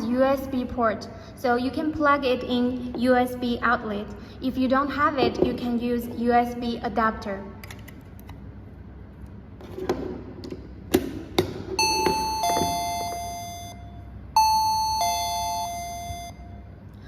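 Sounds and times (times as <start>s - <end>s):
doorbell ding-dong chime: 11.8s - 16.6s.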